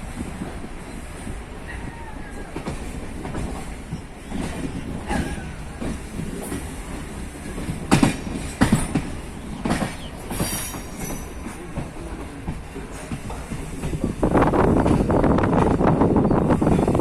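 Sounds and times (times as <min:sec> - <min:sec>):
train wheels rumbling: 0:00.0 - 0:17.0
wheels clacking over rail joints: 0:02.5 - 0:16.0.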